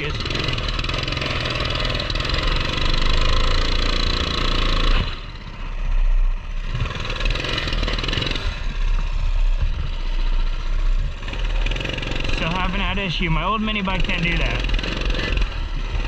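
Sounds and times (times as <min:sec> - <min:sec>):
mini bike engine running: 0:00.0 - 0:16.0
person speaking: 0:12.4 - 0:14.7.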